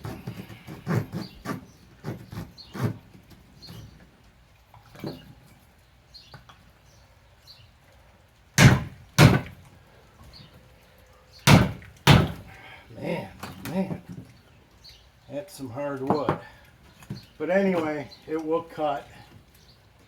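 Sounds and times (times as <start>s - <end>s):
blows striking hardwood: 8.6s - 9.6s, 11.5s - 12.5s.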